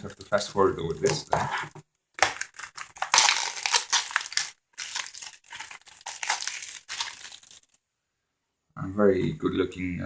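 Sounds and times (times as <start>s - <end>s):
plastic wrapping crinkling: 2.2s - 7.8s.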